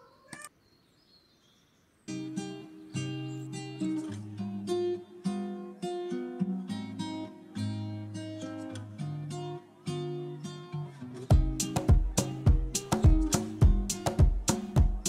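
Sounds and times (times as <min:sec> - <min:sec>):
acoustic guitar: 0:02.1 - 0:15.0
sharp percussive beat: 0:11.3 - 0:15.0.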